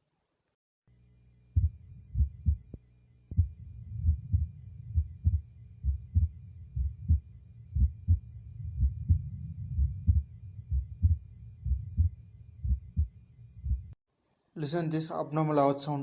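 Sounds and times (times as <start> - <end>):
heartbeat lub-dub: 1.5 - 14.0.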